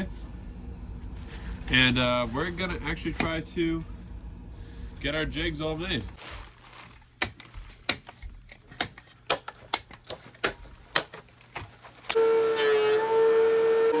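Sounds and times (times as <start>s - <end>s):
wood and tools being handled: 1.2s - 4.3s, 4.9s - 13.1s
woodworking power tool motor: 11.9s - 14.0s.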